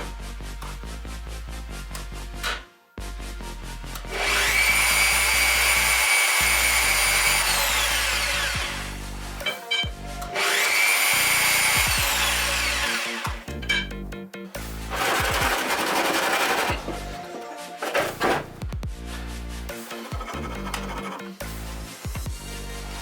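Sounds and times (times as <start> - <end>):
small motor whining: 4.1 - 9.5, 10.2 - 13.8.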